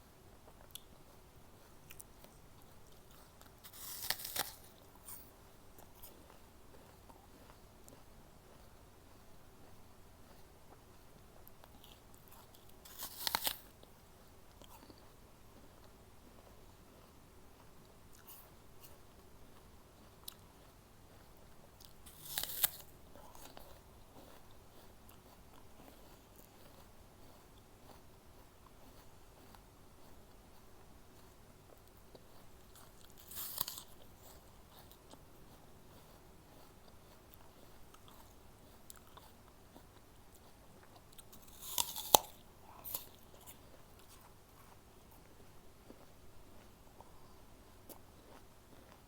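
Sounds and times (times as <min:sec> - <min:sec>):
crunchy chewing: 0:00.0 - 0:49.0
bite into apple: 0:00.5 - 0:08.0, 0:10.4 - 0:15.2, 0:20.1 - 0:30.2, 0:31.2 - 0:45.2.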